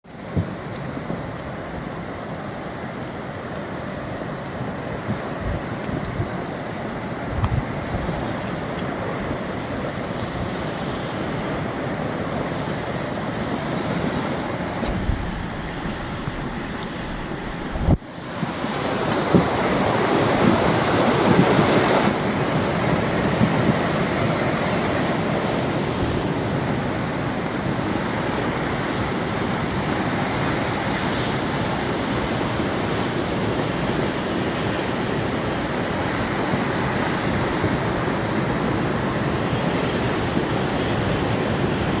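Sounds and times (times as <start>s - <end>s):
river water rushing: 6.4s - 23.2s
brief click: 14.8s - 18.0s.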